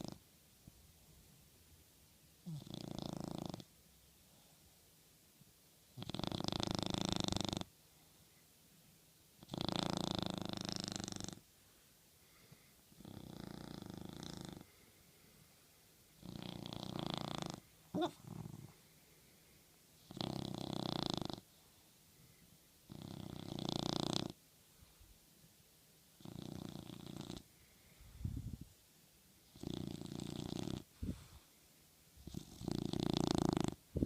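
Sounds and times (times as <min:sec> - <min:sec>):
small dog snoring: 0:00.0 - 0:00.2, 0:02.4 - 0:03.8, 0:05.9 - 0:07.8, 0:09.4 - 0:11.5, 0:12.3 - 0:14.9, 0:16.2 - 0:18.8, 0:20.0 - 0:21.7, 0:22.8 - 0:24.4, 0:26.2 - 0:27.5, 0:29.4 - 0:31.4, 0:32.2 - 0:34.0.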